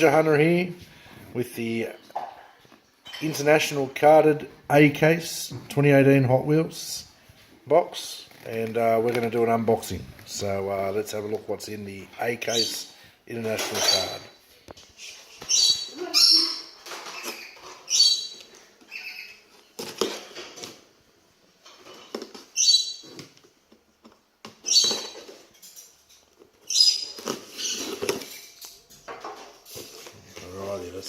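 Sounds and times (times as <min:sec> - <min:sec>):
cardboard and tape ripping: 0:27.0 - 0:28.4.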